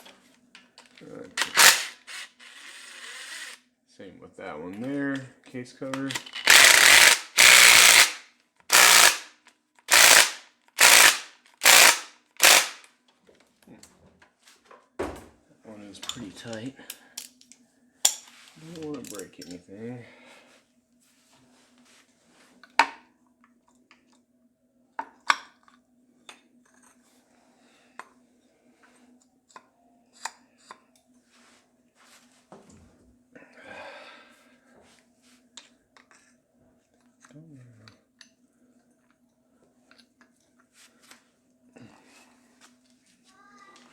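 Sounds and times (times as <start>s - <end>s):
impact wrench rattling: 1.4s - 3.6s, 6.1s - 9.3s, 9.9s - 12.8s.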